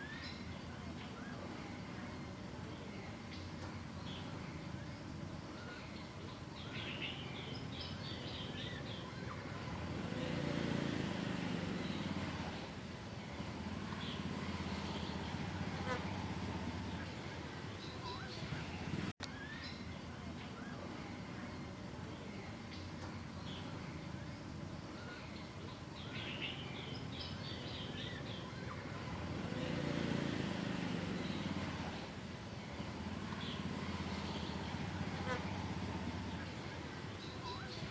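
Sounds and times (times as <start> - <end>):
small bird chirping: 0.0 - 10.4, 11.6 - 29.9
low background noise: 0.0 - 37.9
low motor rumble: 0.0 - 37.9
outdoor background noise: 0.0 - 37.9.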